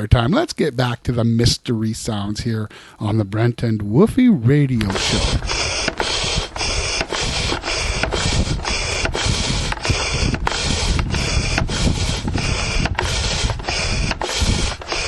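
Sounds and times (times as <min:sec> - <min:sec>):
air pump pumping: 0:04.8 - 0:15.0.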